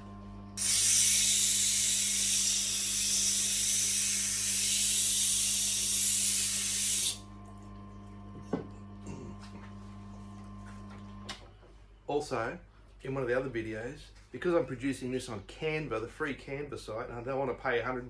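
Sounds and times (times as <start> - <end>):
steel grinding hiss: 0.6 - 7.2.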